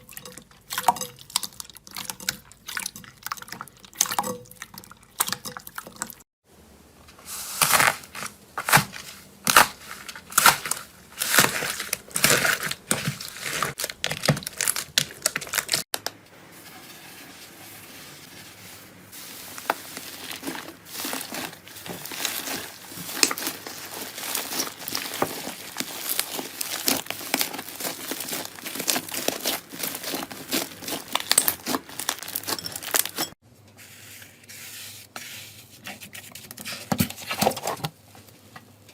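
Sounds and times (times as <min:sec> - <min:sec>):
slime squished by hand: 0:20.3 - 0:32.6.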